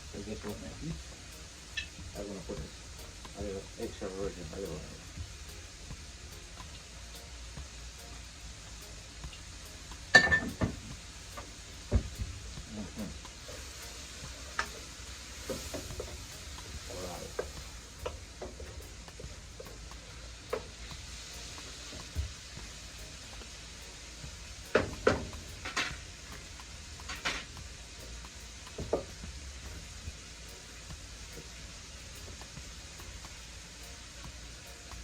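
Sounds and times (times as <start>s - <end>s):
greens sizzling in pan: 0.0s - 35.0s
utensil clinking against pan: 10.1s - 10.8s.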